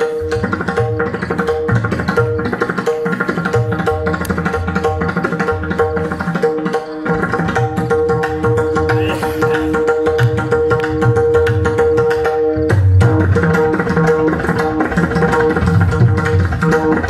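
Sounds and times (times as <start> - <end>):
hand drum fast strokes: 0.0 - 12.2, 13.0 - 17.0.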